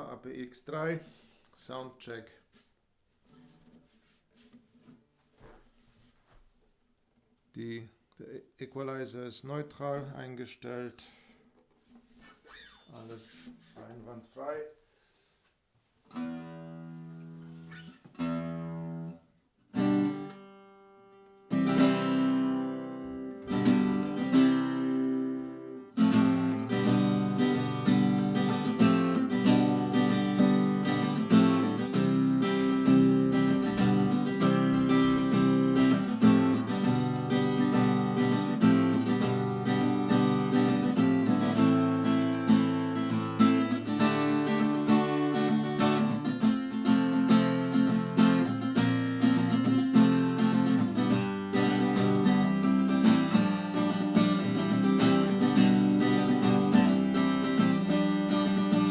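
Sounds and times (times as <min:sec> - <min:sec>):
acoustic guitar strumming: 0:16.1 - 0:58.9.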